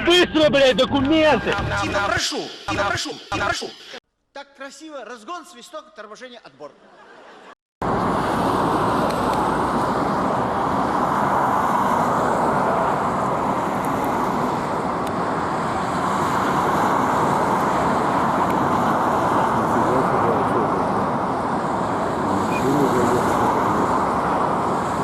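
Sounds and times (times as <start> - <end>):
car tyre and wind noise: 7.8 - 25.0.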